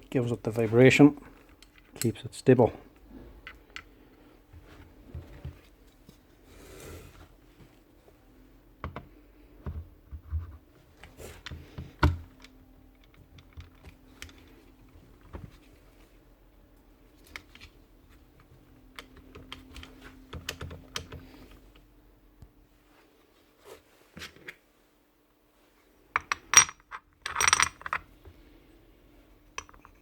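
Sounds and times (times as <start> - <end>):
small parts clicking and tapping: 11.4 - 14.6, 26.2 - 28.1, 29.5 - 30.0.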